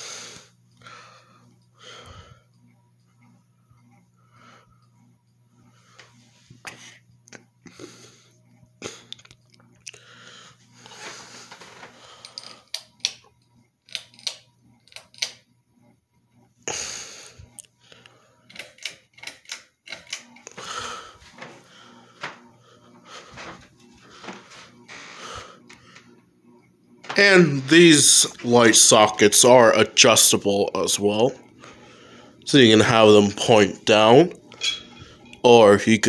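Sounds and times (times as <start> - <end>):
ceiling fan motor hum: 0.0 - 36.0
irregular clicks: 12.2 - 15.4, 17.6 - 20.6.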